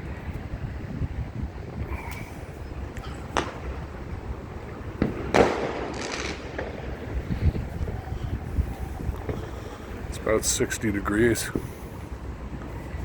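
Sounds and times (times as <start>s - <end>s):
wind noise on microphone: 0.0s - 13.0s
fireworks crackling: 2.8s - 12.7s
distant fireworks bangs: 3.2s - 8.1s.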